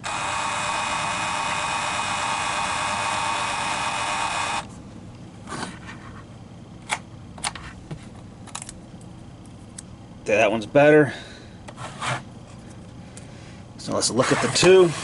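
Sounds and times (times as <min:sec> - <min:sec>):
label maker motor whirring: 0:00.0 - 0:04.7.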